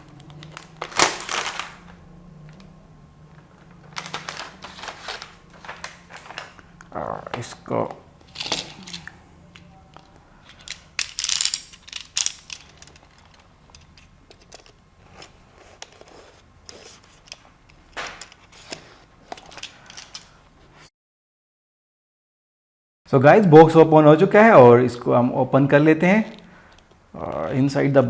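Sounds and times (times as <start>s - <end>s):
cardboard packaging rustling: 0.0s - 2.0s, 3.3s - 9.1s.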